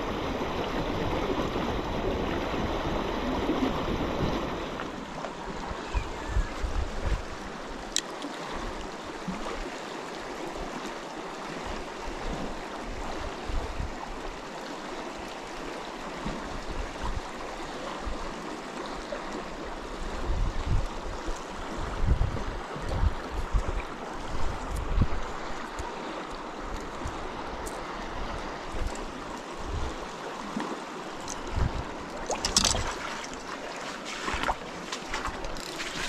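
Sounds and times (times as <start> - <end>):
river water flowing: 0.0 - 36.0.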